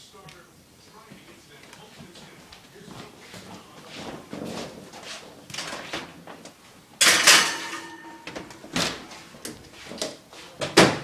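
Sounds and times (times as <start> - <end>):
short metallic ring: 7.0 - 8.3
kitchenware knocks and clatters: 7.0 - 9.0.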